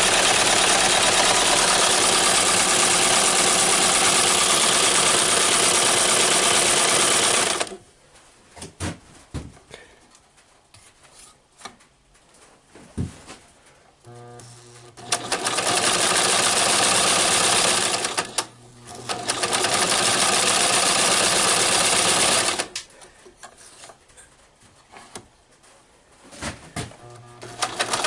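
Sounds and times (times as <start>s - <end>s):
electric sewing machine running: 0.0s - 7.8s, 14.1s - 22.8s, 27.0s - 28.0s.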